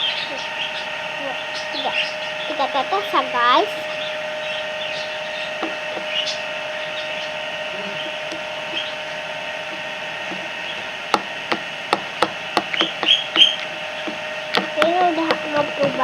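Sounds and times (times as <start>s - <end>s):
steady background hum: 0.0s - 16.0s.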